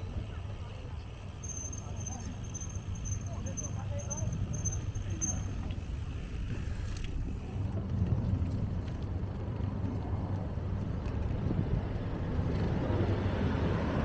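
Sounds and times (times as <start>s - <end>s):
wind buffeting microphone: 5.6s - 14.0s.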